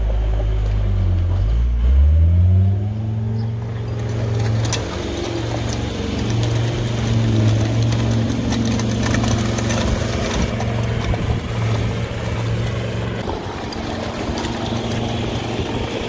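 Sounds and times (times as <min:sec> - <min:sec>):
farm vehicle engine running: 0:00.0 - 0:16.0.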